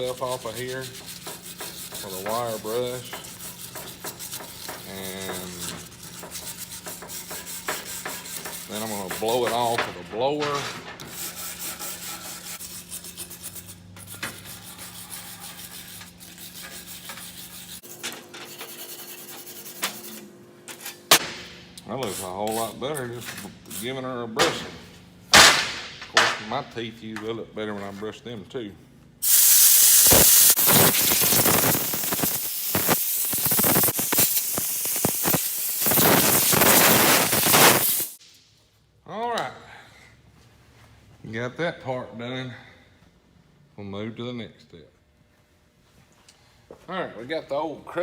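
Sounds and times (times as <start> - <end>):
wire brush scraping metal: 0.0 - 21.1, 29.2 - 38.2
air blower hissing: 29.2 - 38.2.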